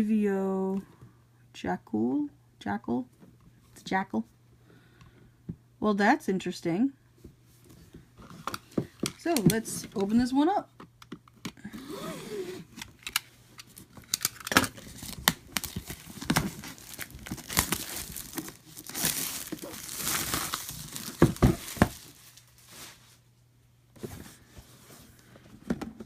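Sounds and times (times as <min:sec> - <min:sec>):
plastic wrap crackling and tearing: 0:13.7 - 0:23.2.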